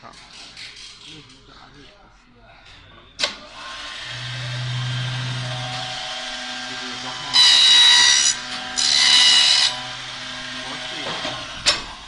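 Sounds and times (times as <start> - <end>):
cutter high-pitched whine: 3.7 - 12.0.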